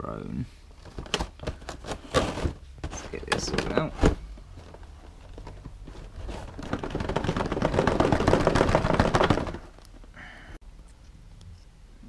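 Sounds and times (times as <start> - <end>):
plastic packaging crackling: 0.8 - 10.1.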